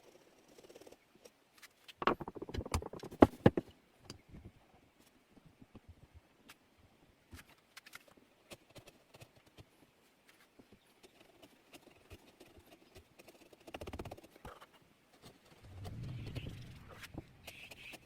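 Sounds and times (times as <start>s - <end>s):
rapid scraping strokes: 15.2s - 18.0s.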